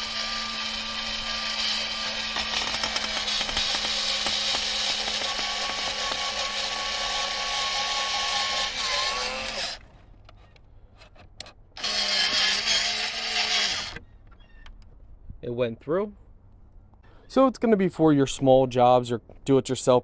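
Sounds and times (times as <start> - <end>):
electric screwdriver whining: 0.0 - 9.9, 11.4 - 14.0.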